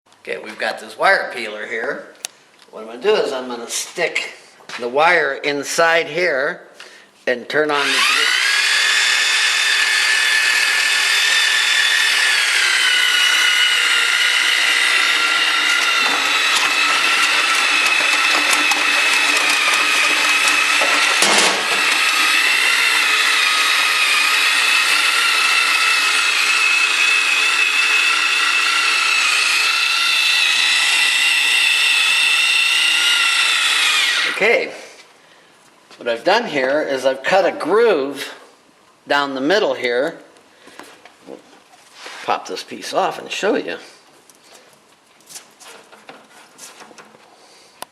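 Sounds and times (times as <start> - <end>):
electric drill whining: 7.8 - 34.4.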